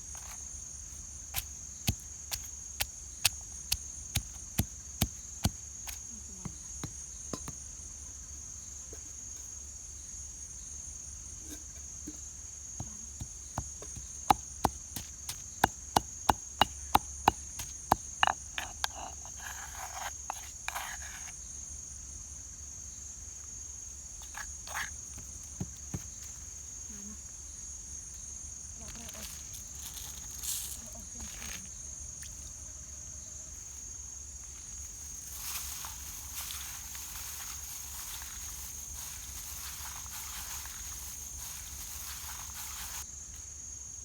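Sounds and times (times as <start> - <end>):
high insect drone: 0.0 - 44.0
scraping rustle: 34.8 - 43.0.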